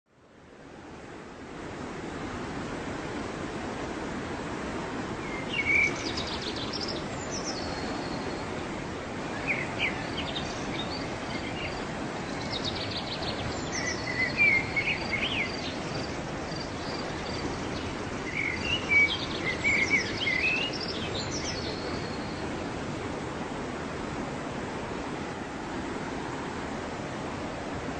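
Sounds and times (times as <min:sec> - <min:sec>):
waterfall rushing: 0:00.4 - 0:27.9
songbird chirping and trilling: 0:05.2 - 0:08.5, 0:09.3 - 0:22.5.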